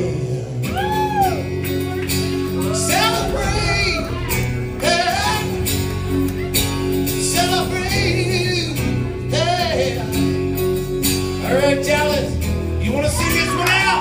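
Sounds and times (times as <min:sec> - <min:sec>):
man singing wordless notes: 0:00.0 - 0:01.7, 0:02.5 - 0:05.8, 0:07.0 - 0:10.6, 0:11.4 - 0:14.0
acoustic guitar chords: 0:00.0 - 0:14.0.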